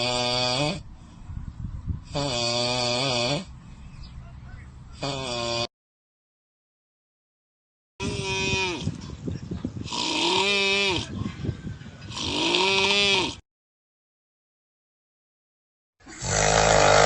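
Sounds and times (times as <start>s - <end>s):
comic snoring: 0.0s - 0.9s, 2.0s - 3.5s, 5.0s - 5.7s, 8.0s - 9.0s, 9.8s - 11.2s, 12.1s - 13.4s, 16.1s - 17.0s.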